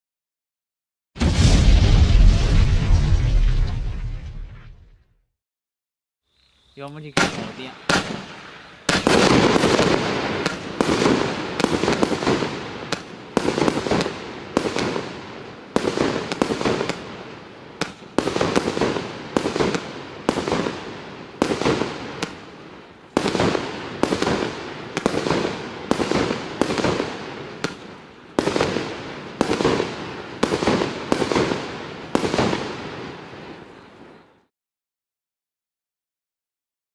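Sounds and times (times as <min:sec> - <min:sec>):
firework cake bangs: 0:01.2 - 0:04.1, 0:07.1 - 0:22.6, 0:23.2 - 0:32.8.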